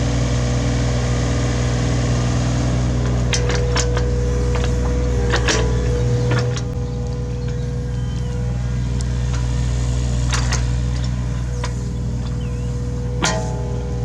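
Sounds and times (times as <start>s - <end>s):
excavator diesel engine running: 0.0s - 14.0s
sharp metal clanks: 13.1s - 13.9s.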